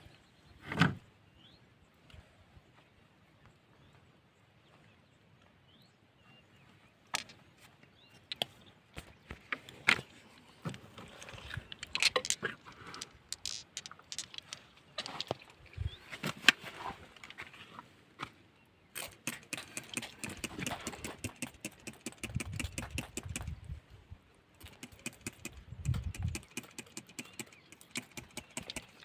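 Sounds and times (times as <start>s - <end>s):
stones scraping: 9.7s - 17.8s
rocks knocking together: 11.5s - 16.4s, 19.0s - 23.6s.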